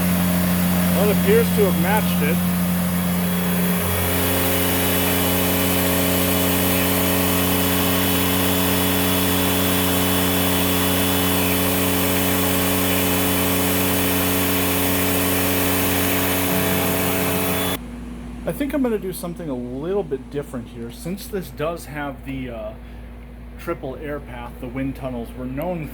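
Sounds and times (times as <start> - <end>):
vacuum cleaner running: 0.0 - 17.8.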